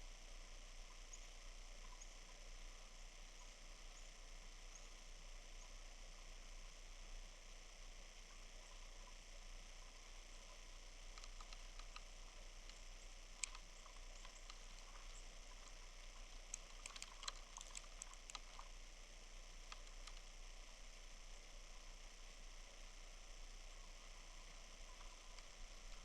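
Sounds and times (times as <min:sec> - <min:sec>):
low hum: 0:00.1 - 0:26.0
light ticks and clicks: 0:09.8 - 0:21.9, 0:23.7 - 0:26.0.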